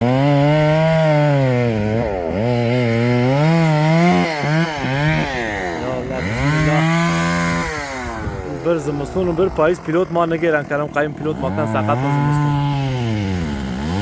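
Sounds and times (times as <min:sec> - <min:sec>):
chainsaw cutting a tree: 0:00.0 - 0:14.0.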